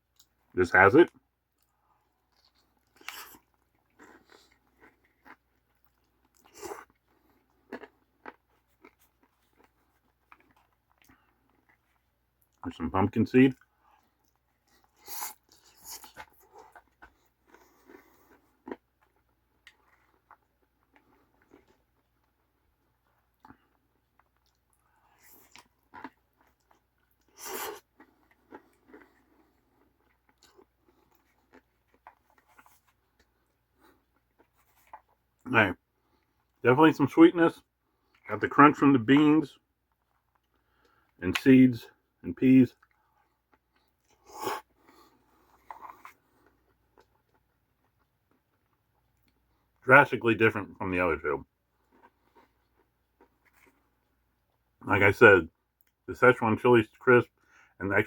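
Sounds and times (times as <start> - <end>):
person chewing crunchy food: 1.5 - 12.6, 13.6 - 35.4, 42.8 - 49.8, 51.8 - 54.6.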